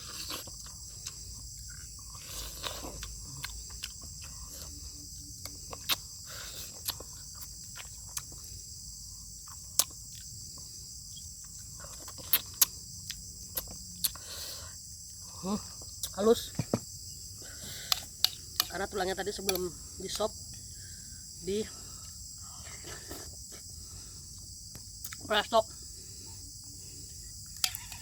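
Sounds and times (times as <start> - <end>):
person chewing: 0.0 - 8.7, 9.3 - 14.8
crickets chirring: 0.0 - 28.0.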